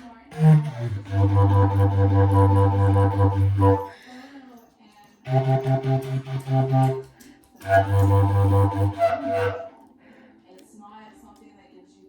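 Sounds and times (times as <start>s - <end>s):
low wind instrument solo: 0.0s - 4.0s, 5.3s - 9.9s.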